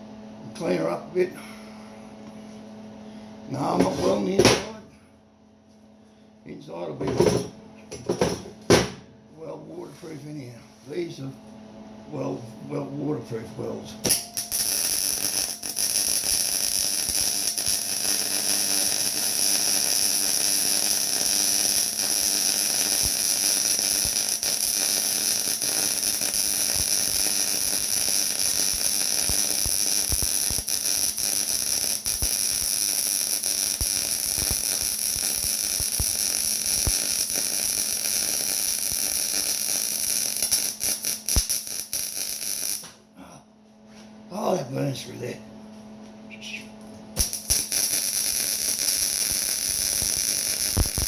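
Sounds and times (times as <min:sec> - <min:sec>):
welding arc crackling hiss: 0:14.1 - 0:43.0, 0:47.2 - 0:51.0.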